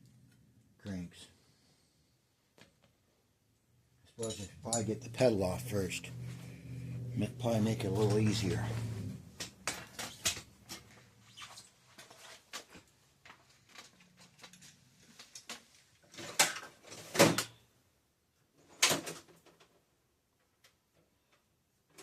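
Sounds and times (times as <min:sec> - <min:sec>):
tools and bicycle parts clicking: 0:04.2 - 0:05.0.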